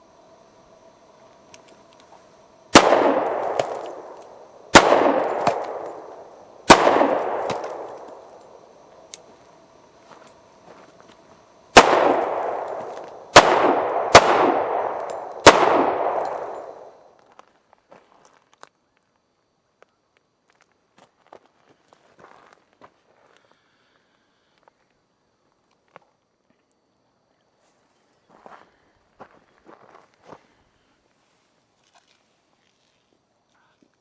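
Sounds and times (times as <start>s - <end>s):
pistol shots: 2.7s - 8.4s, 11.8s - 17.0s
rolling gunshot echo: 2.8s - 8.2s, 11.8s - 16.9s.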